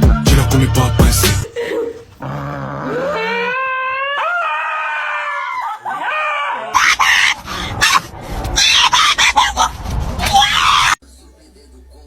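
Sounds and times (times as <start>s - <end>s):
dog howling: 2.2s - 8.0s.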